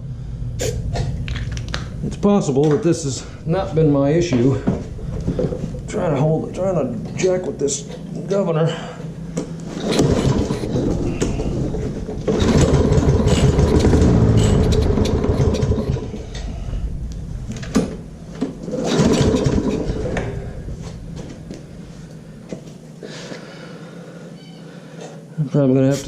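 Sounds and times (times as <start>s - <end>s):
lawnmower engine sputtering: 1.2s - 22.7s
pull-start cord: 9.8s - 16.5s.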